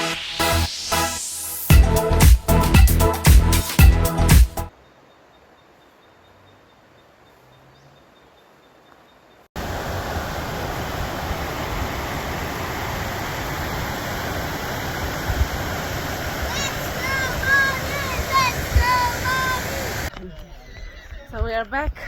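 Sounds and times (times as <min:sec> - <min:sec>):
faint hiss: 0:09.6 - 0:20.1
loud steady rushing noise: 0:09.6 - 0:20.1.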